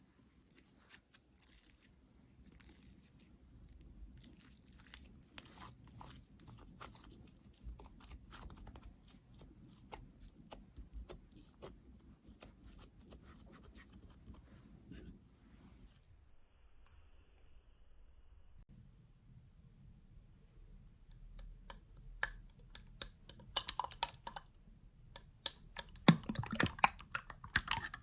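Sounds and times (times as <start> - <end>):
slime crackling and popping: 0.5 - 13.9.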